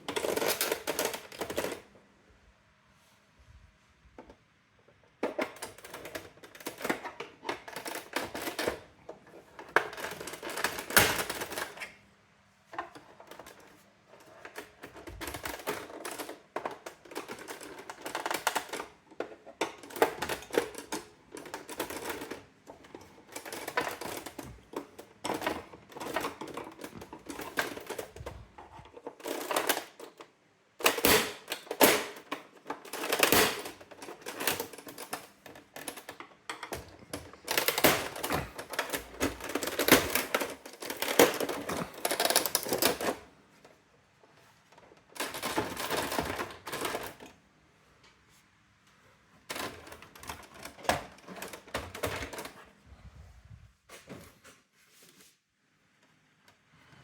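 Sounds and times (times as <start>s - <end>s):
electronic typewriter clattering: 30.8s - 36.1s, 36.7s - 43.2s, 45.2s - 47.2s.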